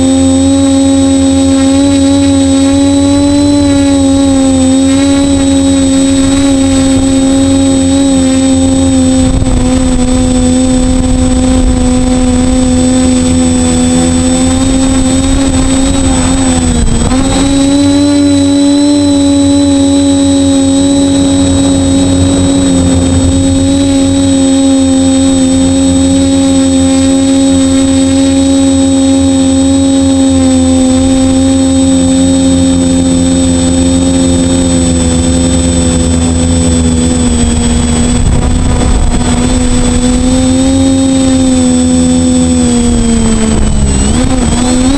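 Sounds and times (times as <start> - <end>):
rumbling buffeting: 0.0 - 30.3, 34.7 - 44.9
drone motors and propellers whining: 0.0 - 44.9.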